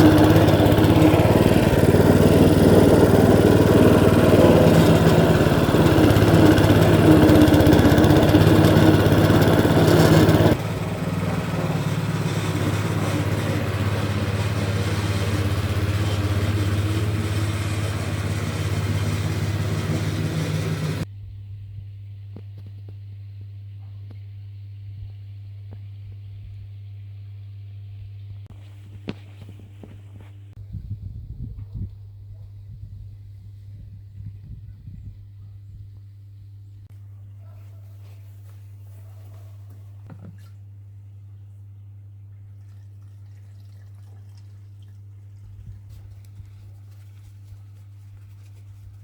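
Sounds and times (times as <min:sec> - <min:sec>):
blades rustling: 0:00.0 - 0:21.1, 0:45.5 - 0:49.0
lawn scarifier running: 0:00.0 - 0:21.1, 0:45.4 - 0:49.0.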